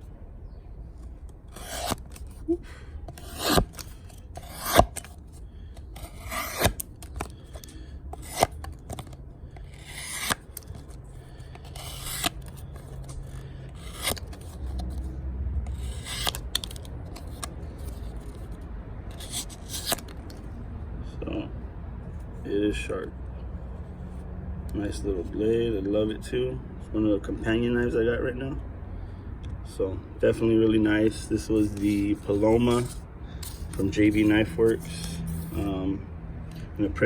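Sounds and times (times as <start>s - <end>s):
knife slicing through cardboard: 1.5s - 2.4s, 3.1s - 5.1s, 6.0s - 6.8s, 8.2s - 8.6s, 9.8s - 10.5s, 11.6s - 13.1s, 13.8s - 15.0s, 15.8s - 16.7s.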